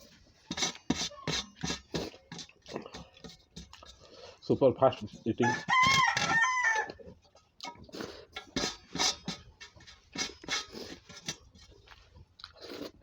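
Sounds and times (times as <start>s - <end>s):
person chewing and smacking: 1.9s - 4.2s, 10.3s - 13.0s
rooster crowing: 5.4s - 7.0s.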